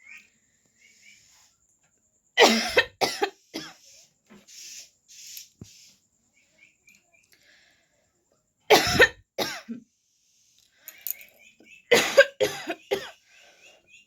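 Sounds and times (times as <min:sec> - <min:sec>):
woman coughing: 0:02.4 - 0:03.7, 0:08.7 - 0:09.8, 0:11.9 - 0:13.2
breaths: 0:07.3 - 0:08.3, 0:10.0 - 0:11.4, 0:13.1 - 0:14.0.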